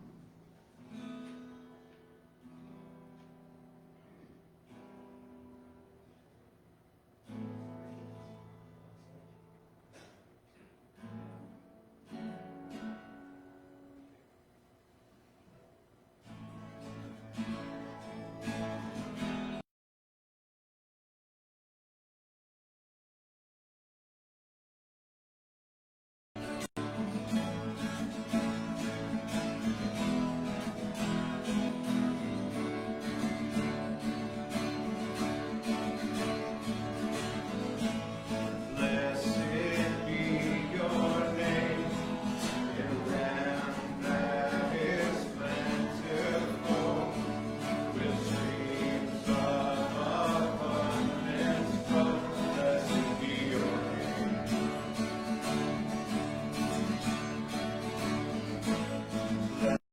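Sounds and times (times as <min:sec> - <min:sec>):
acoustic guitar playing: 0:00.0 - 0:06.3, 0:07.2 - 0:10.1, 0:11.0 - 0:14.2, 0:16.2 - 0:19.6, 0:26.4 - 0:59.8
voices singing: 0:31.4 - 0:55.3.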